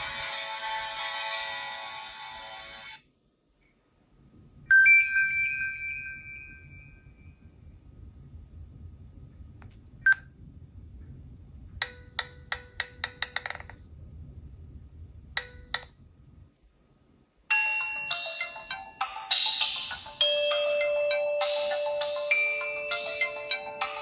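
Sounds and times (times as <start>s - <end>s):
phone ringtone melody: 0.0s - 3.0s, 4.7s - 6.9s, 17.5s - 24.0s
rapid ticking tones: 9.9s - 14.3s, 15.2s - 16.1s.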